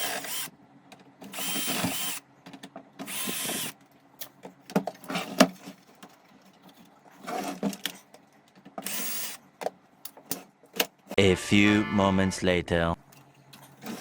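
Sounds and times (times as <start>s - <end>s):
cordless drill whining: 0.0s - 0.5s, 1.3s - 2.2s, 3.1s - 3.8s, 8.8s - 9.4s.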